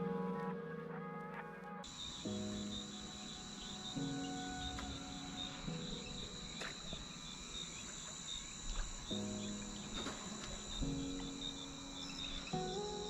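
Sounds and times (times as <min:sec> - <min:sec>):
background music of held chords: 0:00.0 - 0:07.0
insects trilling: 0:01.8 - 0:13.0.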